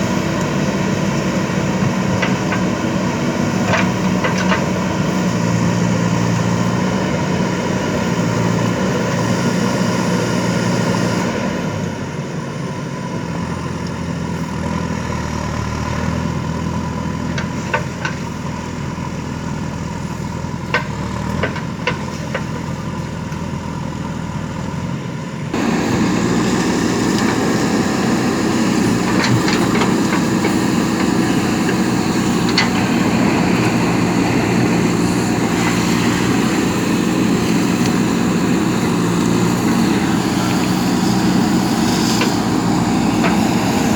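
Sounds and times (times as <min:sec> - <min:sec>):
diesel engine running: 0:00.0 - 0:43.9.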